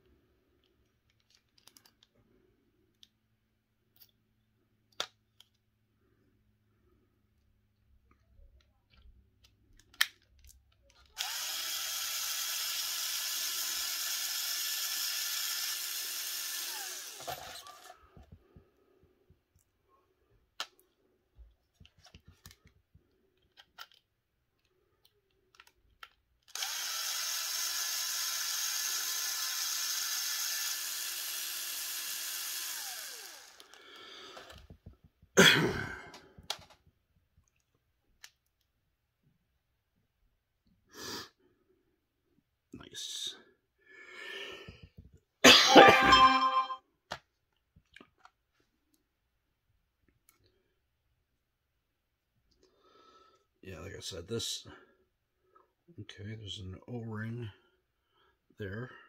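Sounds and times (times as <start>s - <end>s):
small clicks: 0.6s - 2.1s
cordless drill whining: 11.2s - 18.2s, 26.5s - 34.7s.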